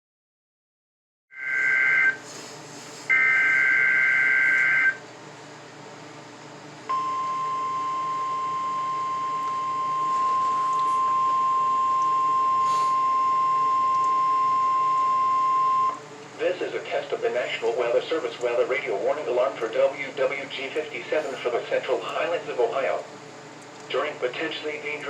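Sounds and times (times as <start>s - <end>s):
piercing warning alarm tone: 1.4s - 2.2s, 3.1s - 5.0s, 6.9s - 16.0s.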